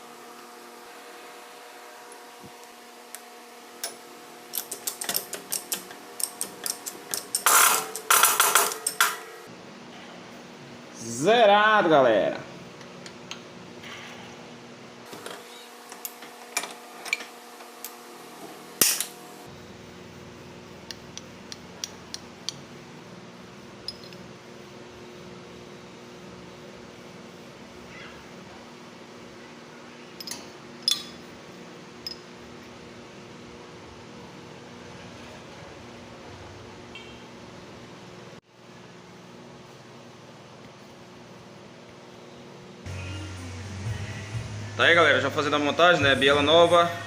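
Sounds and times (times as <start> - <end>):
metal tools clicking: 4.5 - 9.3, 23.9 - 24.2, 30.2 - 31.2
metal parts rattling: 4.6 - 9.3.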